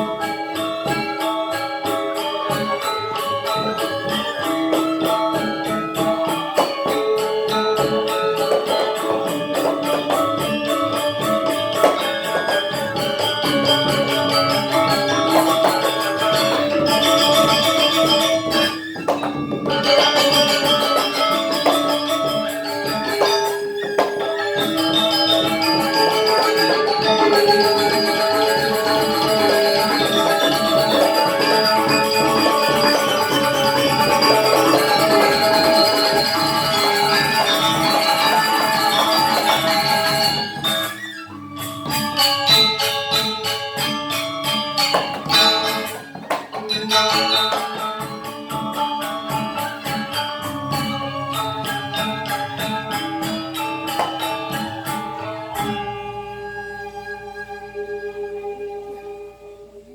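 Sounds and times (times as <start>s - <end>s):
gamelan playing: 0.0s - 59.3s
gong ringing: 49.0s - 56.5s.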